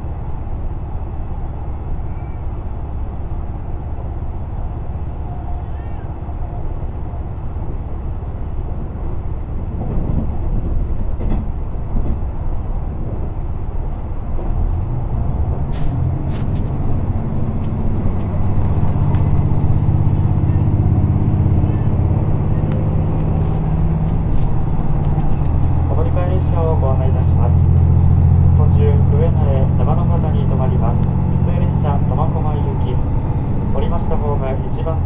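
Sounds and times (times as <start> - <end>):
train wheels rumbling on track: 0.0 - 35.0.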